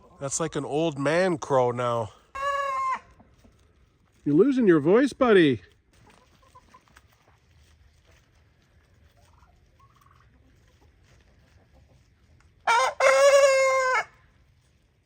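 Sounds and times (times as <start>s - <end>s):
old rooster crowing: 12.6s - 14.2s.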